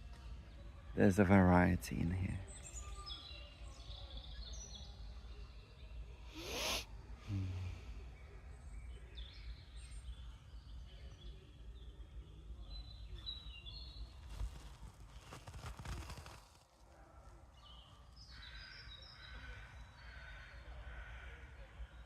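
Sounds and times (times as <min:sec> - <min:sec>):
small birds chirping: 0:00.0 - 0:16.6.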